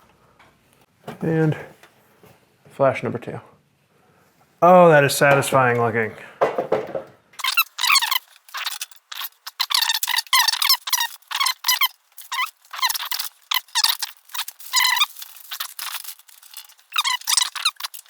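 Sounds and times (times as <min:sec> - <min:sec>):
packing foam squeaking: 0:07.4 - 0:18.0.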